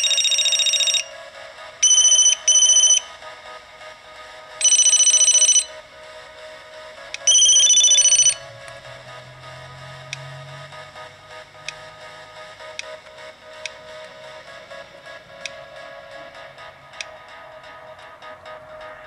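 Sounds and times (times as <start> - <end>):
mobile phone ringtone beeping: 0.0 - 1.2, 1.8 - 3.1, 4.6 - 5.8, 7.3 - 8.4.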